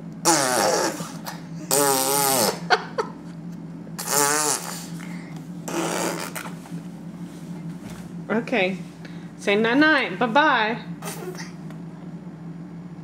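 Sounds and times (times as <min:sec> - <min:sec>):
baby blowing raspberries: 0:00.2 - 0:02.7, 0:04.0 - 0:06.5.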